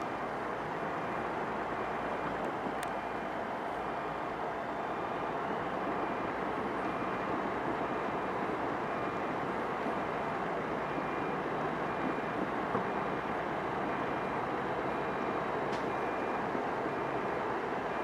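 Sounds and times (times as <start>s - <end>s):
heavy diesel equipment running: 0.0s - 18.0s
faint backup beeper: 4.0s - 18.0s.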